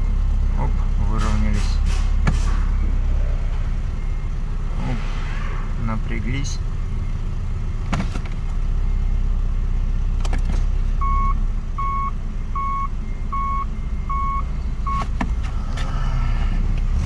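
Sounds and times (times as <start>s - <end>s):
car engine idling: 0.0s - 17.0s
reverse warning beeps: 2.6s - 5.1s, 5.7s - 7.8s, 11.0s - 15.4s
gear selector click: 10.2s - 10.7s.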